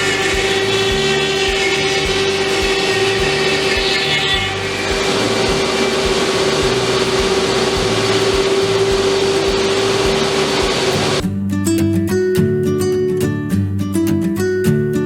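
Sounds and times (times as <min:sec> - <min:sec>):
milling hiss: 0:00.0 - 0:11.2
router spindle whine: 0:00.0 - 0:11.2.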